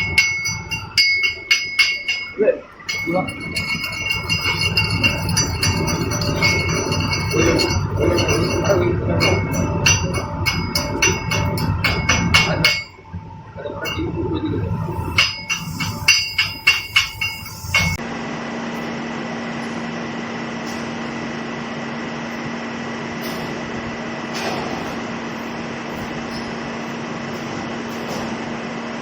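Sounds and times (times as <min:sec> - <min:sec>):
sharp metal clinks ringing: 0:00.0 - 0:13.0, 0:14.9 - 0:18.0
welding crackles and knocks: 0:00.0 - 0:13.0, 0:14.9 - 0:18.0
steady low hum: 0:00.0 - 0:24.3.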